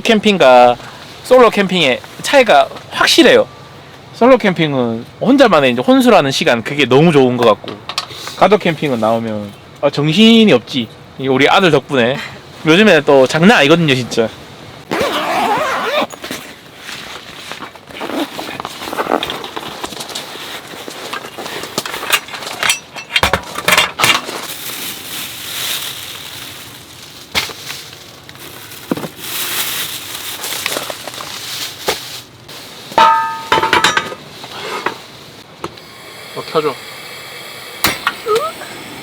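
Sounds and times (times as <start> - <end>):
camping gear and dishes clinking: 7.4 - 9.7, 14.9 - 25.0, 30.4 - 36.0.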